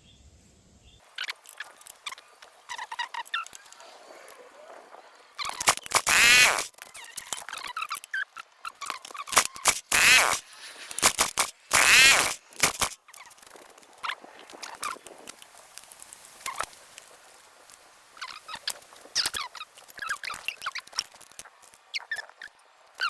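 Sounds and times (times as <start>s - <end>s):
recoil starter cord whirring: 5.4s - 6.7s, 9.3s - 13.0s.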